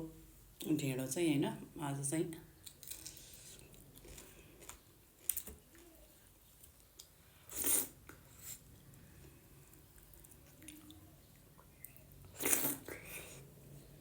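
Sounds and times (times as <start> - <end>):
person chewing food: 2.6 - 13.5.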